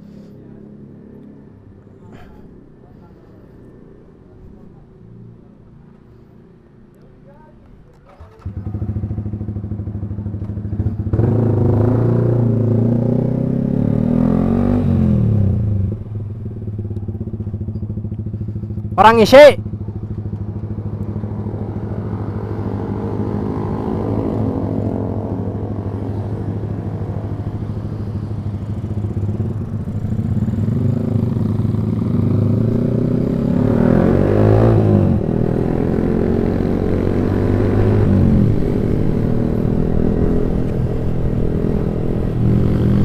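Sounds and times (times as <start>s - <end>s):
motorcycle engine revving: 8.0s - 19.0s, 19.6s - 43.0s.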